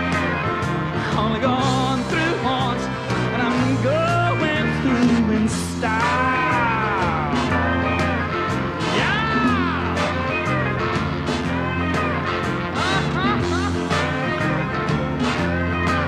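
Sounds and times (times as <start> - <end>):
live country band: 0.0 - 16.0
sliding lead guitar line: 0.0 - 16.0.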